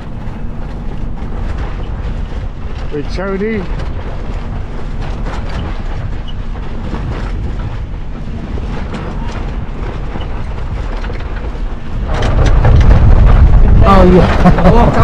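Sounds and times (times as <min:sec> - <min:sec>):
boat engine drone: 0:00.0 - 0:15.0
rushing water: 0:00.0 - 0:15.0
wind buffeting microphone: 0:00.0 - 0:15.0.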